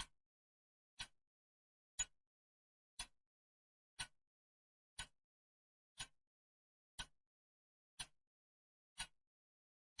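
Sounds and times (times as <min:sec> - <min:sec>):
clock ticking: 0:00.0 - 0:00.2, 0:01.0 - 0:01.3, 0:02.0 - 0:02.3, 0:03.0 - 0:03.3, 0:03.9 - 0:04.3, 0:04.9 - 0:05.3, 0:05.9 - 0:06.3, 0:07.0 - 0:07.3, 0:08.0 - 0:08.3, 0:08.9 - 0:09.3.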